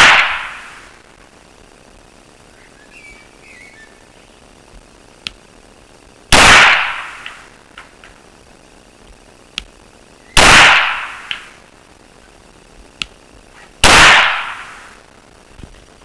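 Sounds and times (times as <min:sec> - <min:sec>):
pistol shot with echo: 0:00.0 - 0:00.7, 0:06.3 - 0:07.4, 0:10.4 - 0:11.5, 0:13.8 - 0:14.9.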